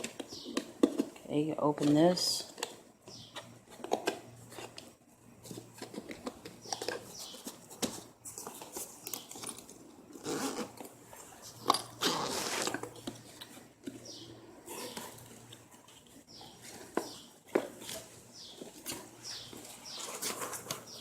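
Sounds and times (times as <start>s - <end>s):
paper rustling and crinkling: 14.6s - 21.0s.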